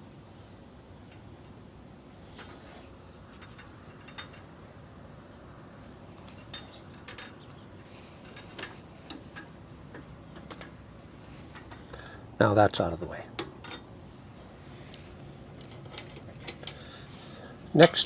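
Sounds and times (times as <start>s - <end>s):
low steady hum: 0.0s - 18.0s
metal tools clinking: 2.4s - 4.5s, 6.3s - 7.5s, 8.2s - 9.5s, 12.7s - 13.9s, 15.6s - 17.1s, 17.8s - 18.0s.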